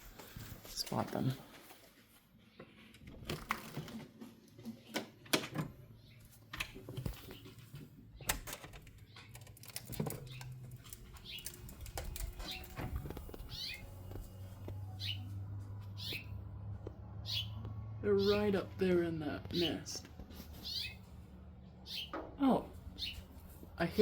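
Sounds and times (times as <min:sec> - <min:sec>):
finches chirping: 0:10.0 - 0:14.0, 0:14.9 - 0:15.3, 0:15.9 - 0:16.4, 0:17.2 - 0:19.0, 0:20.6 - 0:21.0, 0:21.8 - 0:22.2.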